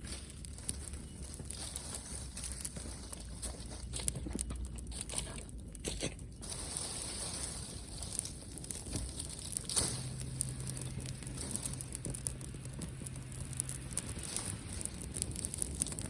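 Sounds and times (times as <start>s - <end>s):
campfire crackling: 0.0s - 16.0s.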